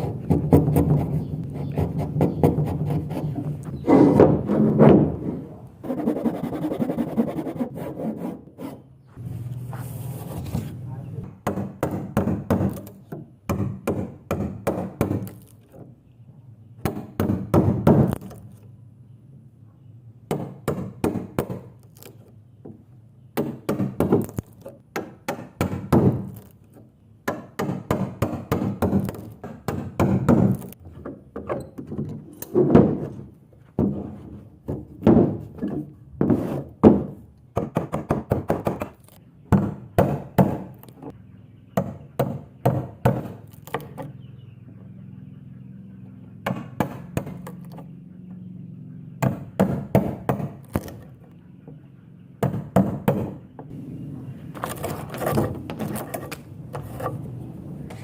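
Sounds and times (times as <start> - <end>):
hammer striking wood: 11.2 - 15.4, 16.8 - 18.3, 20.3 - 21.7, 23.4 - 26.4, 27.2 - 30.7, 33.8 - 40.8, 41.8 - 44.1, 46.4 - 47.8, 49.2 - 51.1, 52.4 - 53.8.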